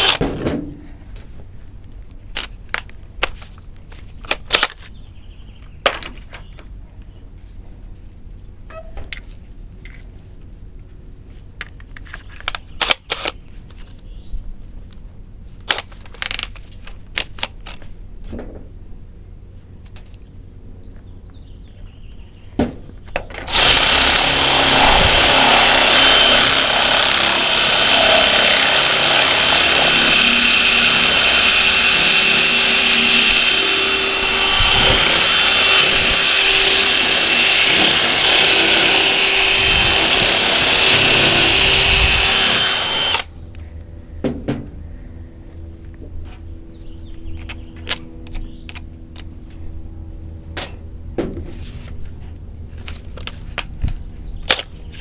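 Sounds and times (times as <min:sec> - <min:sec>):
electric drill boring into metal: 0:00.0 - 0:00.2, 0:23.5 - 0:43.3.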